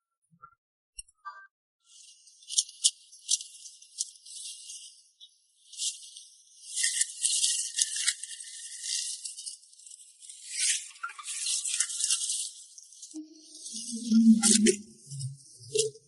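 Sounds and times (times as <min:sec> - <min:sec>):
hissy shaker-like rattling: 0:05.6 - 0:16.0.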